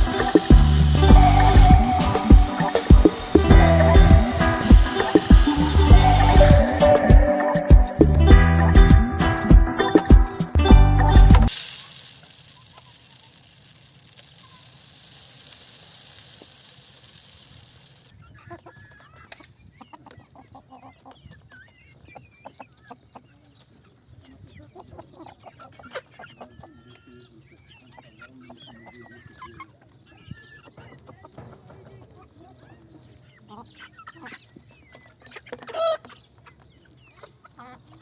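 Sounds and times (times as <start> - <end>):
steady hiss: 0.0 - 8.2, 11.4 - 18.1
chickens clucking: 0.0 - 10.7, 16.0 - 38.0.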